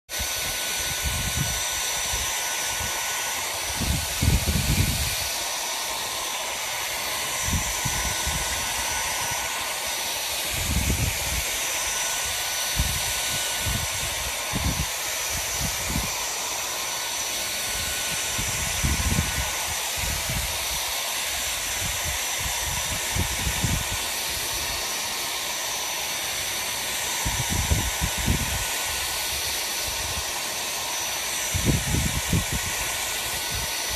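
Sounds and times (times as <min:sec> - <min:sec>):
hair dryer blowing: 0:00.0 - 0:33.9.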